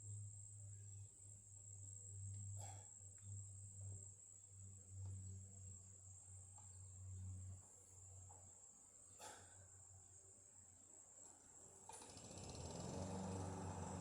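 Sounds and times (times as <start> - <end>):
cricket trill: 0.0 - 14.0.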